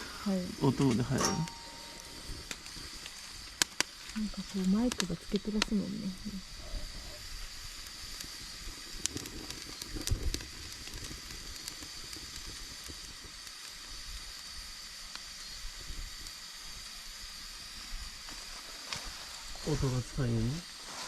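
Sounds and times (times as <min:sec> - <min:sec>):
campfire crackling and popping: 0:00.0 - 0:21.0.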